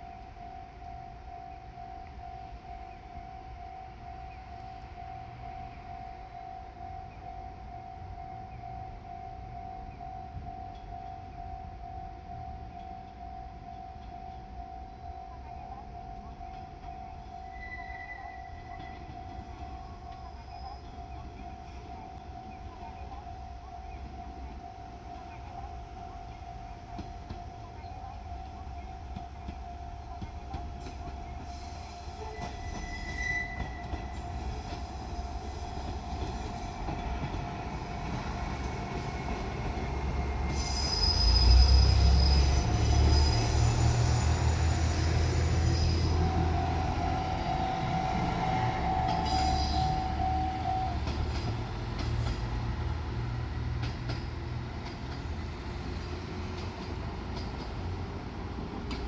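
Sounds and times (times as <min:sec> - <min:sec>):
railcar engine and wheels rumbling: 0:00.0 - 0:59.0
high wheel squeal: 0:17.4 - 0:19.2, 0:30.8 - 0:37.1, 0:37.8 - 0:52.5.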